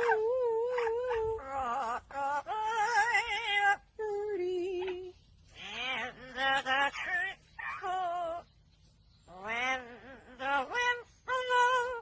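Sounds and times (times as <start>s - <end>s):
wavering animal calls: 4.7s - 8.6s, 9.2s - 12.0s.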